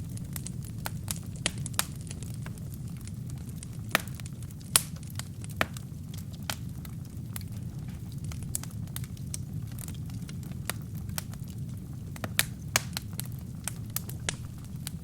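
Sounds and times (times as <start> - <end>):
flames rumbling: 0.0 - 15.0
wood crackling and popping: 0.0 - 15.0.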